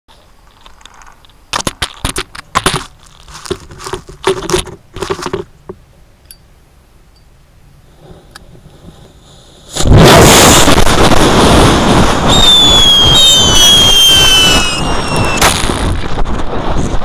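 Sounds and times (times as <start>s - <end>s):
handling noise rustling and scraping: 0.1s - 5.8s.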